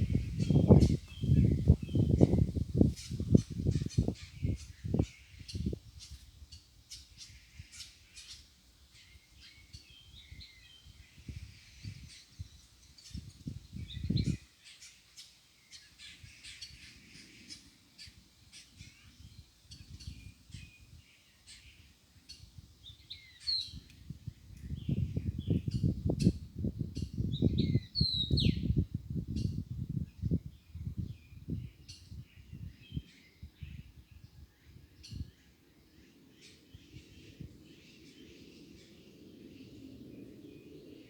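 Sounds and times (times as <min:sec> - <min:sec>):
small birds chirping: 0:00.0 - 0:41.0.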